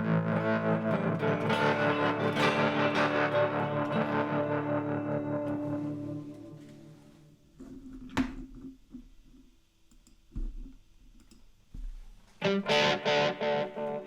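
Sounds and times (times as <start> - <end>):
quiet picked guitar notes: 0.0 - 7.1, 12.4 - 14.0
strummed electric guitar chords: 0.0 - 7.3, 12.4 - 14.0.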